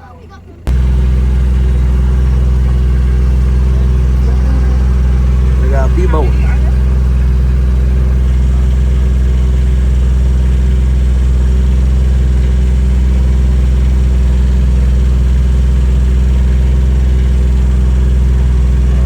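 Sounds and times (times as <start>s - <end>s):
car engine droning: 0.7s - 19.0s.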